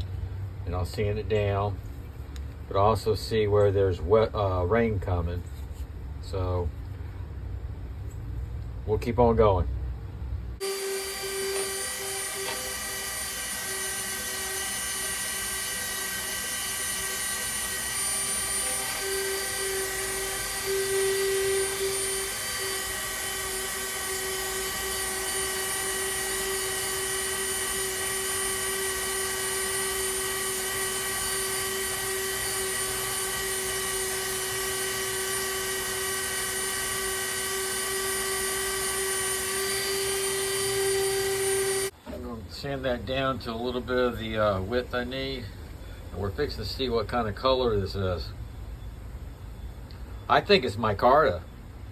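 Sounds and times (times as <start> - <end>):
rotary tool sanding: 10.6 - 42.0.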